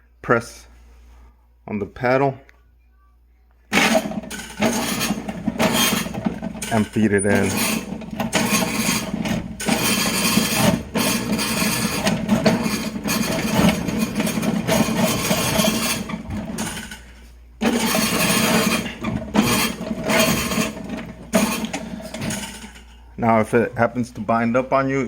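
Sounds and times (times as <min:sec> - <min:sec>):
drain auger running: 0:03.7 - 0:22.8
cable clattering: 0:03.7 - 0:22.9.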